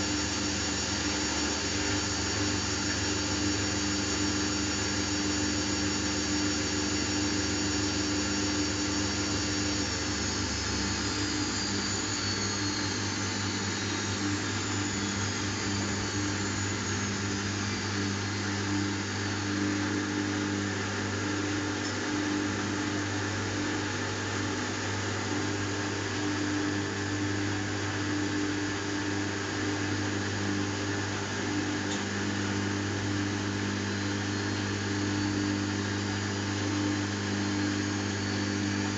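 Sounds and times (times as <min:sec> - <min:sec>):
washing machine spinning: 0:00.0 - 0:38.9.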